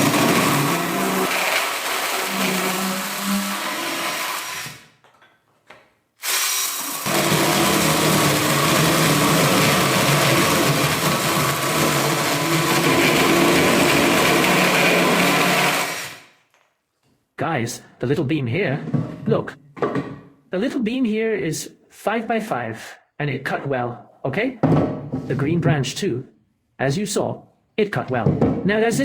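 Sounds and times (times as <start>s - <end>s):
drill chainsaw sawing wood: 0.0s - 4.9s, 6.2s - 16.3s.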